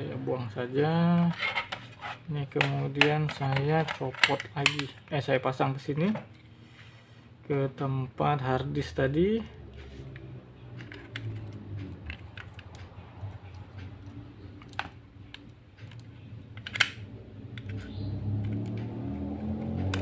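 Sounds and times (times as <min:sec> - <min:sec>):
low steady hum: 0:00.0 - 0:20.0
laptop drive clicks and taps: 0:10.1 - 0:20.0.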